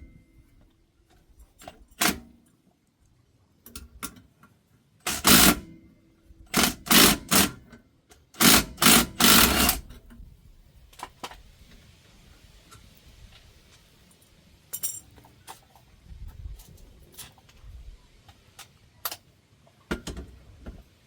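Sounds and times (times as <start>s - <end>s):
power tool rattling in bursts: 5.1s - 5.7s, 6.5s - 7.7s, 8.4s - 9.9s.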